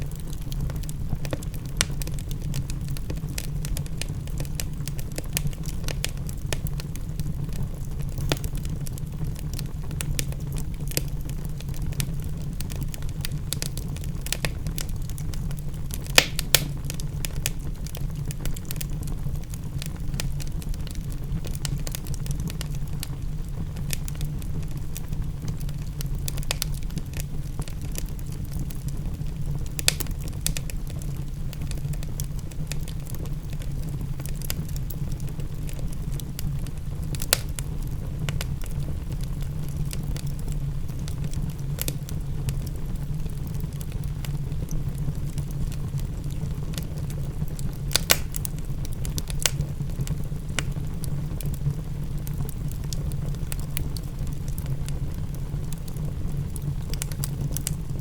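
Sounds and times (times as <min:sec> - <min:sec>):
wood fire crackling: 0:00.0 - 0:58.0
sharp fire pops: 0:08.1 - 0:11.2, 0:16.0 - 0:19.1, 0:25.4 - 0:27.9, 0:29.5 - 0:30.8, 0:37.1 - 0:37.6, 0:47.5 - 0:51.6.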